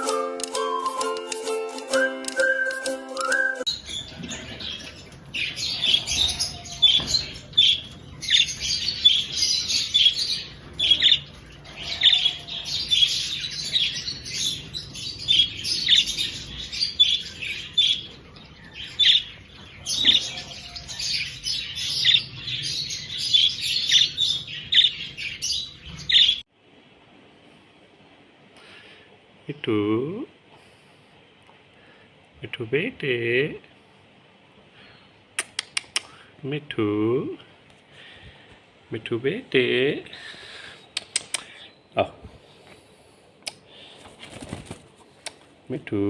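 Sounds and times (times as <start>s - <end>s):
flock of birds chirping: 3.6s - 26.5s.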